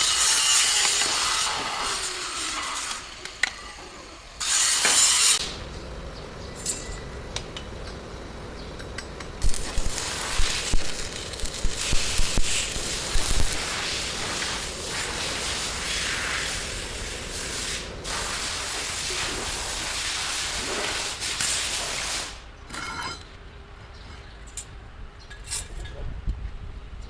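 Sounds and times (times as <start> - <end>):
metal cutting or grinding: 0.0 - 3.8, 4.4 - 5.6
metal clinking: 6.6 - 8.1.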